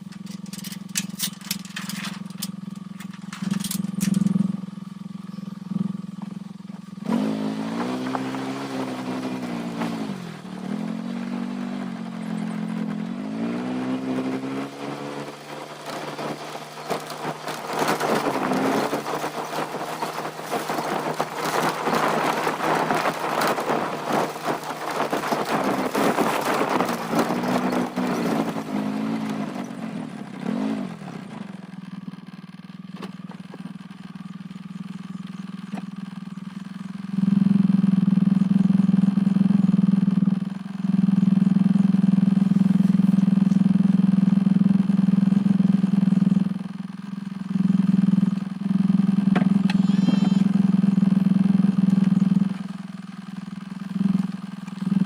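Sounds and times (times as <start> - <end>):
rough rattling noise: 0.0 - 4.6
engine clicking: 0.0 - 7.3, 13.8 - 55.0
vehicle engine idling and revving: 0.0 - 55.0.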